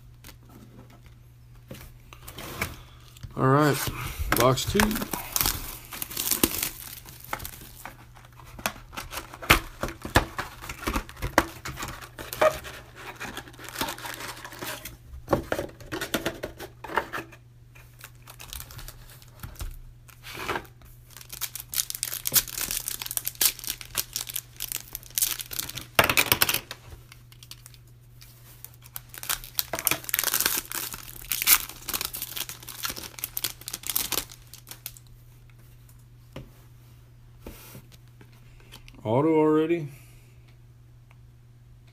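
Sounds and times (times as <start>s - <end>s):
packaging ripping and crinkling: 3.1s - 14.9s, 17.9s - 20.4s, 21.0s - 27.9s, 28.6s - 35.1s.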